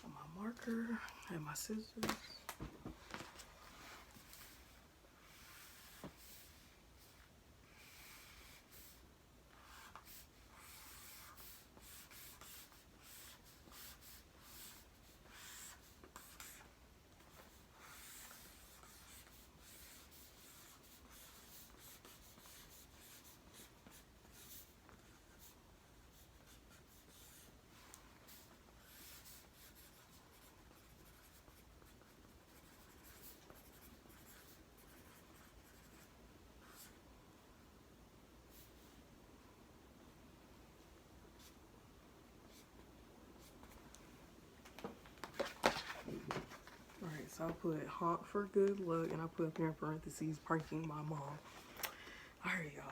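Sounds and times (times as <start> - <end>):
marker writing on poster board: 4.2 - 7.2, 7.8 - 37.0.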